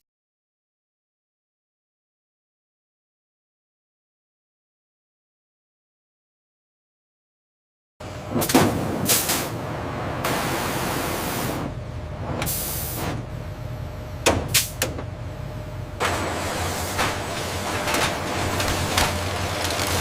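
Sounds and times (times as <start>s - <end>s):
machinery low hum: 8.0s - 20.0s.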